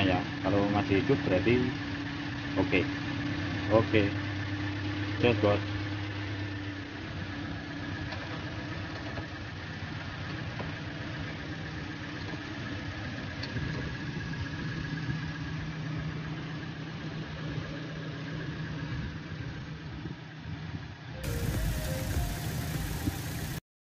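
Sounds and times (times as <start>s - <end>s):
car engine idling: 0.0s - 23.6s.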